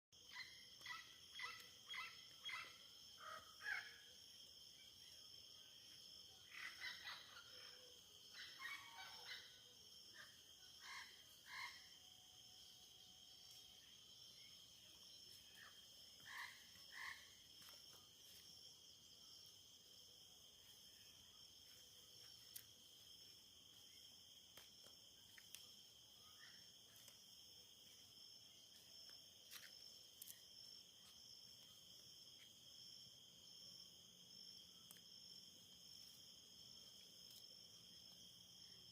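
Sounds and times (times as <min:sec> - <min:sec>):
frogs calling: 0:00.2 - 0:04.2, 0:06.4 - 0:12.1, 0:13.5 - 0:23.1
high-pitched insect trill: 0:00.2 - 0:38.9.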